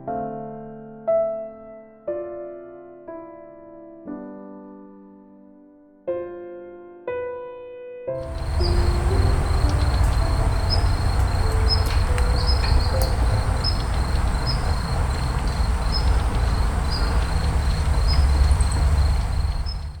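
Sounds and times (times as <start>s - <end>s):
insect high-pitched trill: 8.2s - 20.0s
steady low rumble: 8.2s - 20.0s.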